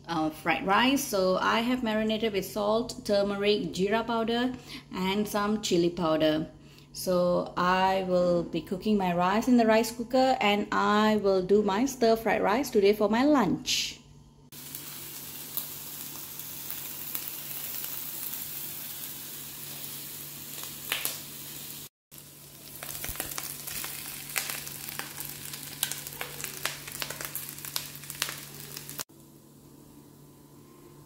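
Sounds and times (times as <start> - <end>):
food sizzling in hot oil: 14.5 - 29.6.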